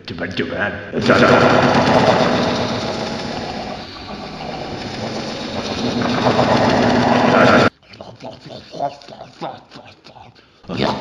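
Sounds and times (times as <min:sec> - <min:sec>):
vacuum cleaner motor whirring: 0:01.0 - 0:07.7.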